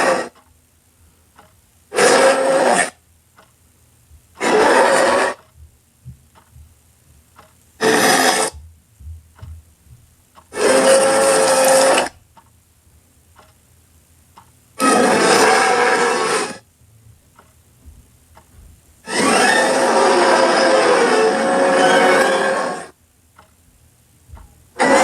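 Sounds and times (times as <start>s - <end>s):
bear roaring: 0.0s - 0.3s, 1.9s - 2.9s, 4.4s - 5.4s, 7.8s - 8.5s, 10.6s - 12.1s, 14.8s - 16.6s, 19.1s - 22.9s, 24.8s - 25.0s.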